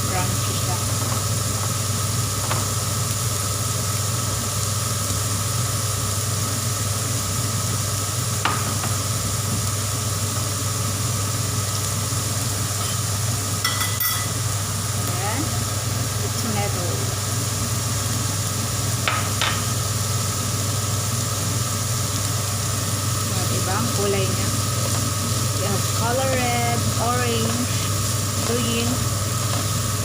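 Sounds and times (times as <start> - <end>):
vegetables sizzling in a pan: 0.0 - 30.0
steady low hum: 7.5 - 30.0.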